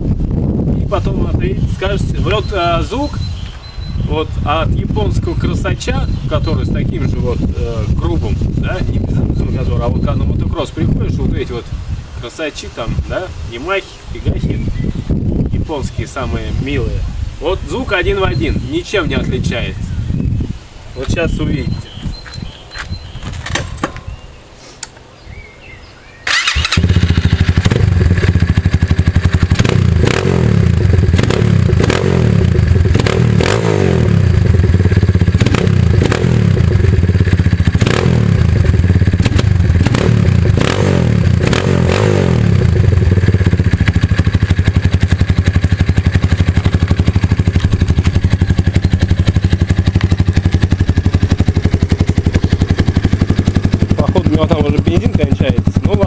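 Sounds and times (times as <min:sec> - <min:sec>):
dirt bike engine revving: 0:26.2 - 0:56.0.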